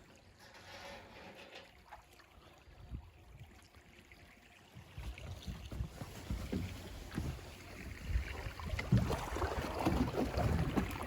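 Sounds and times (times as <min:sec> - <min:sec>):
river water trickling: 0:00.0 - 0:11.0.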